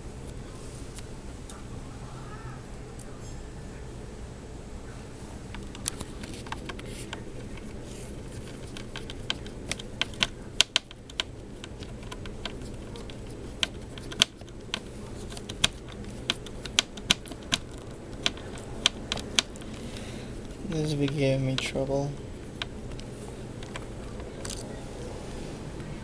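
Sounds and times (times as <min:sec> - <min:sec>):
small plastic and metal parts clicking: 0:05.6 - 0:21.8.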